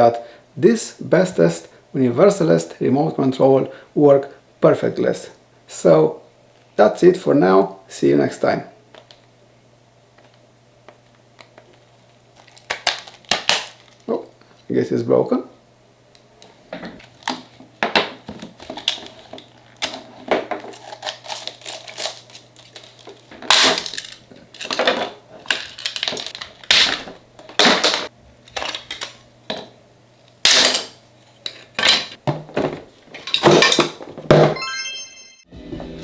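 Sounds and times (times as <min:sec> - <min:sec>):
hard objects clattering: 0:16.8 - 0:29.7
high tinkling tone: 0:34.6 - 0:35.5.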